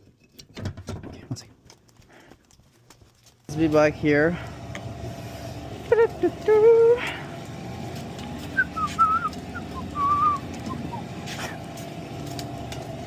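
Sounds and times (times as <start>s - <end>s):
person humming: 5.9s - 7.3s
person whistling: 8.6s - 10.8s.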